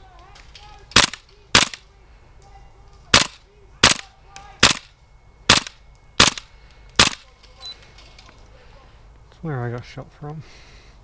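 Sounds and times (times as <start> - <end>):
airsoft gun shots: 0.9 - 1.8, 3.1 - 4.9, 5.5 - 7.2.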